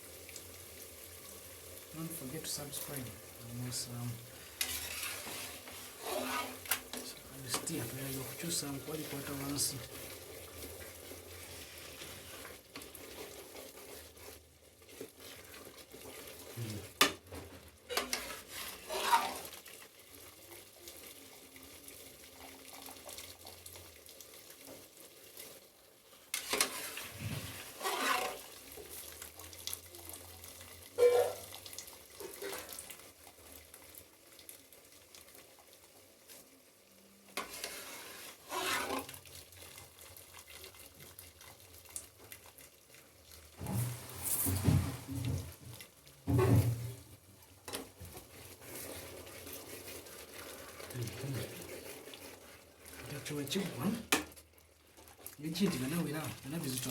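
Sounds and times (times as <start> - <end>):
food sizzling in a pan: 0.0 - 56.9
spoon scraping and knocking pan: 4.6 - 9.7, 17.0 - 19.5, 26.4 - 28.5, 37.4 - 39.2.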